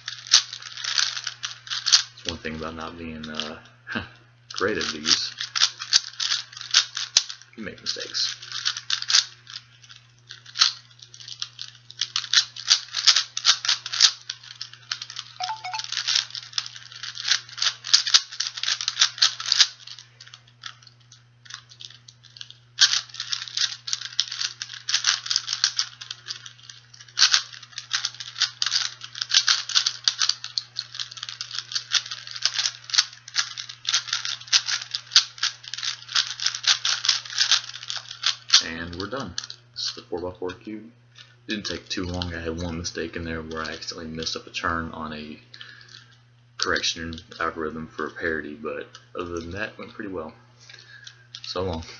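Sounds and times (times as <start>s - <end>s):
speed cube clicking: 0.0s - 2.2s, 4.5s - 39.6s.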